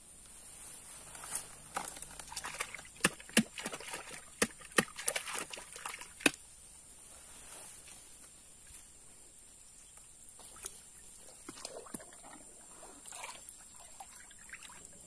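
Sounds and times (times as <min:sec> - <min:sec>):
water sloshing and splashing: 0:01.8 - 0:06.4, 0:10.4 - 0:15.0.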